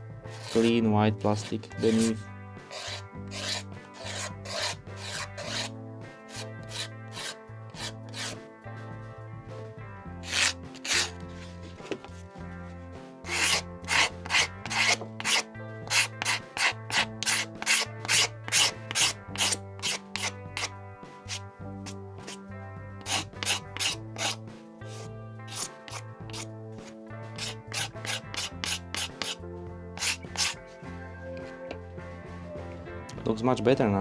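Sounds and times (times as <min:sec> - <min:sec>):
background music: 0:00.0 - 0:34.0
hand scraper scraping plastic: 0:00.3 - 0:08.4, 0:10.2 - 0:12.2, 0:13.3 - 0:21.4, 0:23.0 - 0:29.4, 0:30.0 - 0:30.8.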